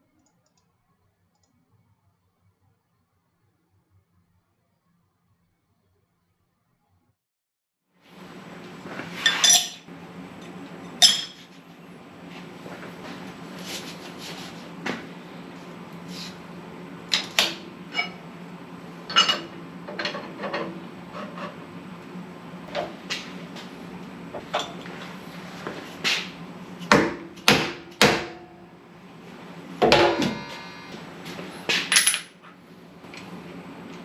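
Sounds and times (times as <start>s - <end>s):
low steady hum: 8.1s - 34.0s
metallic ring: 29.8s - 32.4s
metal tools clinking and knocking: 31.7s - 32.4s.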